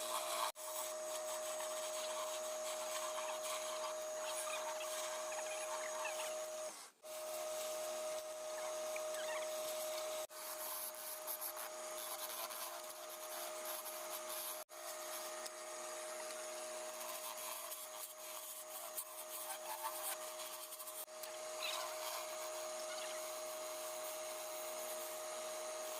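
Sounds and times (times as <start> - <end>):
tool scraping and rasping on wood: 0.0 - 7.0, 16.9 - 22.6
steady machine hum: 0.0 - 25.9.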